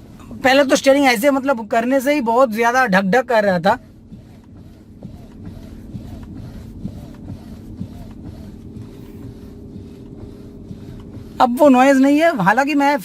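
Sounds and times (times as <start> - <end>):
engine hum: 0.0 - 13.0
faint steering whine: 0.0 - 13.0
small steering thud: 3.0 - 13.0.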